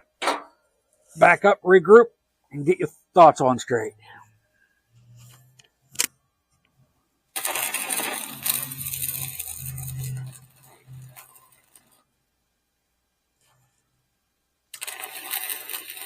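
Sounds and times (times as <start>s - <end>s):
welder arc crackling: 7.3s - 12.1s, 14.7s - 16.0s.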